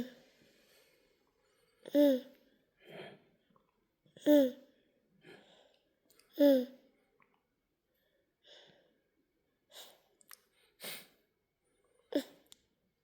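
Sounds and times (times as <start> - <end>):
soft breathy sighs: 0.0 - 3.4.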